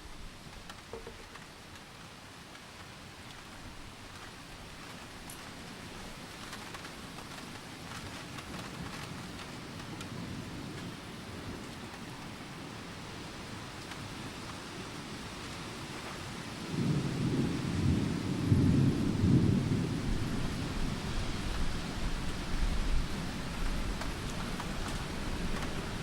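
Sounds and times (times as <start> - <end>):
steady rain: 0.0 - 26.0
thunder rumbling: 16.6 - 26.0.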